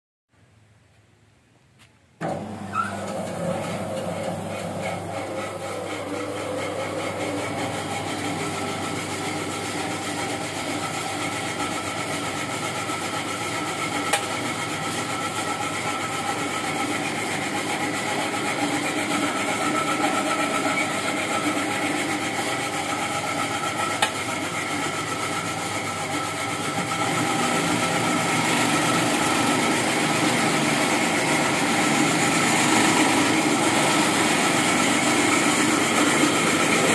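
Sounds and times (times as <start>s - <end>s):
machine humming: 2.2s - 11.4s, 26.6s - 36.9s.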